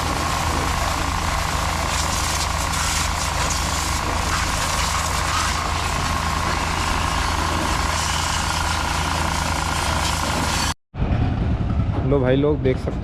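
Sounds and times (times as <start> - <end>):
pressure washer motor hum: 0.0 - 10.8
water spray hiss: 1.8 - 6.3.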